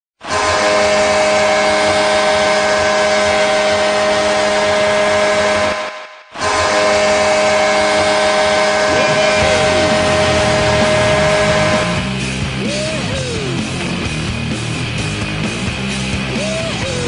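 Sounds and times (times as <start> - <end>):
goal horn low blast: 0.2 - 12.4.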